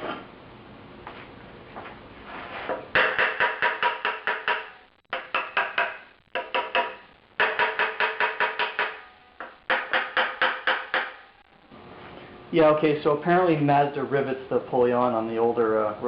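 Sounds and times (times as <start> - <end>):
hammer striking metal pulley: 3.0 - 11.2.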